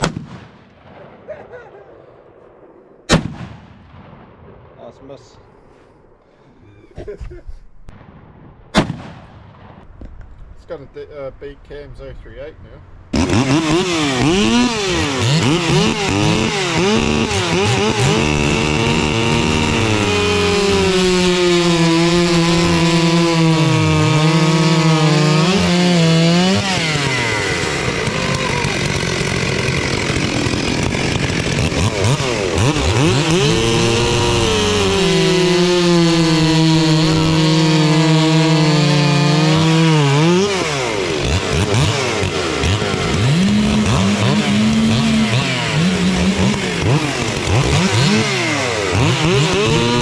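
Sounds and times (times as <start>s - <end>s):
chainsaw running at high revs: 13.2s - 50.0s.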